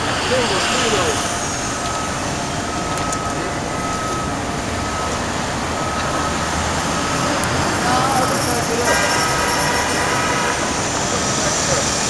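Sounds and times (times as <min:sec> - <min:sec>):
outdoor background noise: 0:00.0 - 0:12.0.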